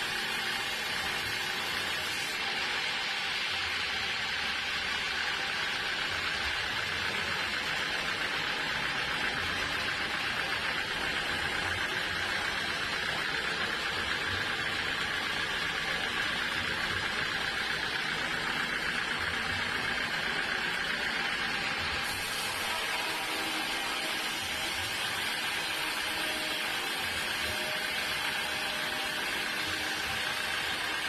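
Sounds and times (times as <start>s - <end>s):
sawmill machinery drone: 0.0s - 31.0s.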